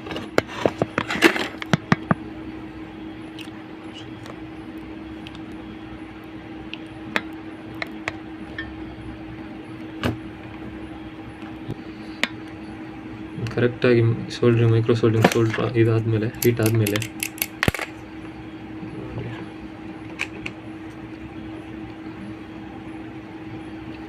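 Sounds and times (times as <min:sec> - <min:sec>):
low electrical hum: 0:00.0 - 0:24.0
small tools clicking and tapping: 0:16.3 - 0:17.9.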